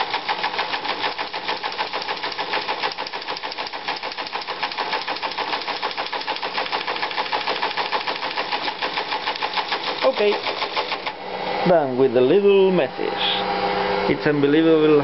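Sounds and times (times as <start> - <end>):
teleprinter clattering: 0.0 - 11.2.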